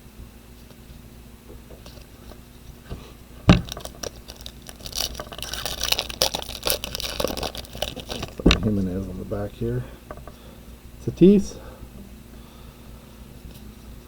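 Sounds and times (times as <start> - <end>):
foil wrapper tearing and crinkling: 3.6 - 8.5.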